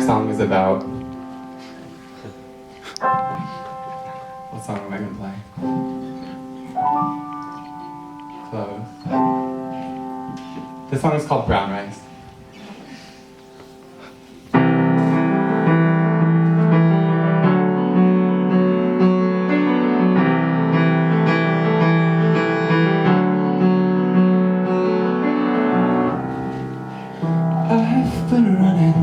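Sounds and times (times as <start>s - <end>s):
keyboard playing sustained chords: 0.0s - 11.2s.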